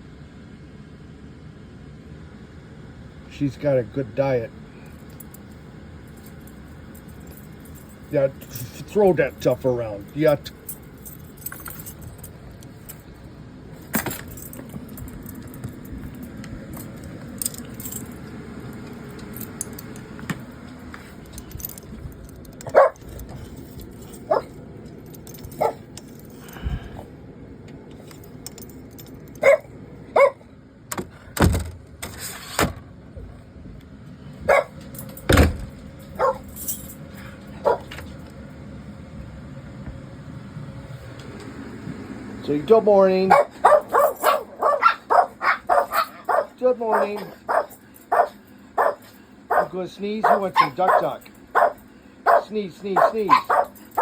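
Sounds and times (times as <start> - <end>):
faint metallic jingle: 4.8 - 20.0, 34.5 - 38.0, 43.3 - 54.0
dog barking: 22.6 - 23.1, 24.3 - 24.6, 25.6 - 25.9, 29.4 - 30.5, 34.4 - 34.8, 36.2 - 36.5, 37.6 - 37.9, 43.3 - 54.0.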